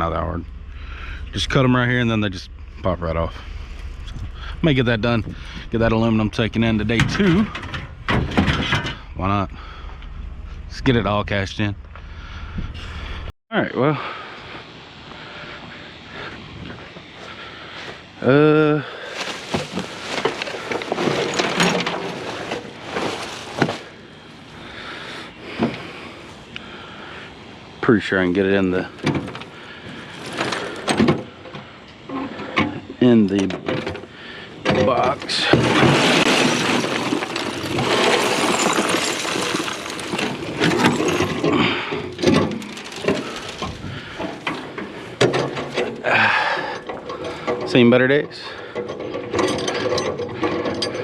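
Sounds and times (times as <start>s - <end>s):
scrap metal rattling and clattering: 3.4s - 9.2s, 19.0s - 26.0s, 28.9s - 31.5s, 33.6s - 51.0s.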